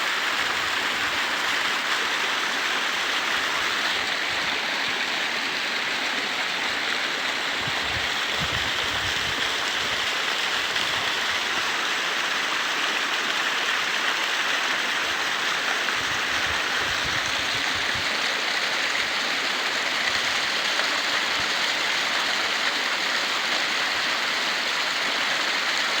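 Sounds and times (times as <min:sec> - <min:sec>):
stream water rushing: 0:00.0 - 0:26.0.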